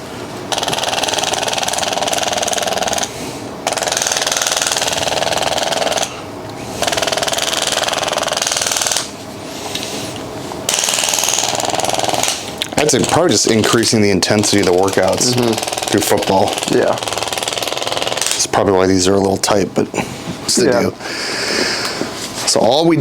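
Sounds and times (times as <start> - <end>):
electric percussive tool hammering: 0.5 - 9.9, 10.7 - 18.7.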